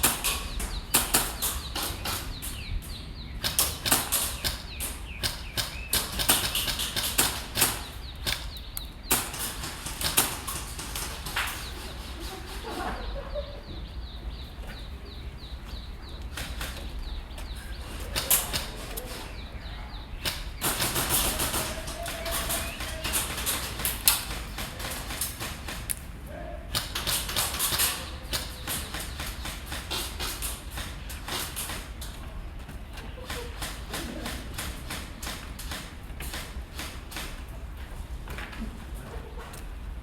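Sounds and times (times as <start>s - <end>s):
sharp clicks and knocks: 0.0s - 12.7s, 20.2s - 26.1s.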